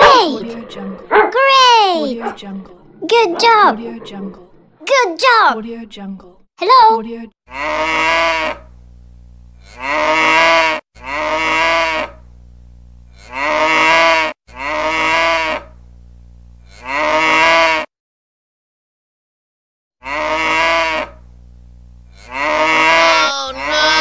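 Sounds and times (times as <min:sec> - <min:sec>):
cow mooing ringtone: 0:13.2 - 0:15.5, 0:22.2 - 0:23.3.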